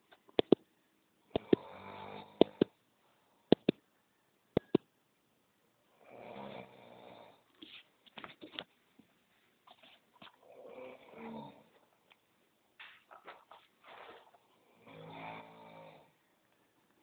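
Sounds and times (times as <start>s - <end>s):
person snoring: 1.4s - 2.8s, 5.9s - 7.5s, 10.4s - 11.8s, 13.9s - 16.2s.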